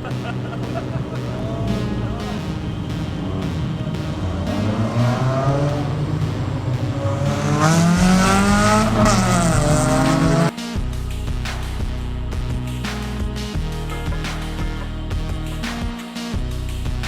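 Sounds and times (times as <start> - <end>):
car engine revving: 0.0 - 10.6
background music: 0.0 - 17.0.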